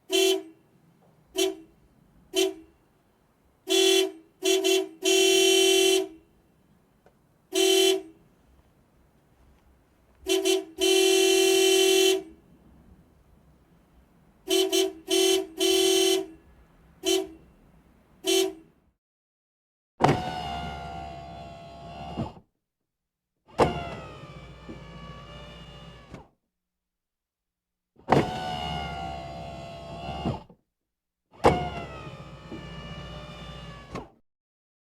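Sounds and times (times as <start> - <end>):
car horn honking: 0.0 - 6.5, 7.5 - 8.4, 10.2 - 12.6, 14.4 - 17.6, 18.2 - 18.8.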